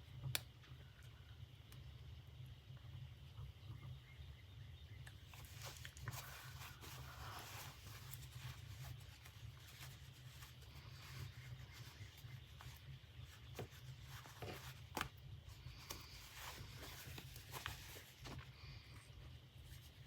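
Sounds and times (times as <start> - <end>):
low steady hum: 0.0 - 20.0
fabric rubbing and rustling: 5.3 - 20.0.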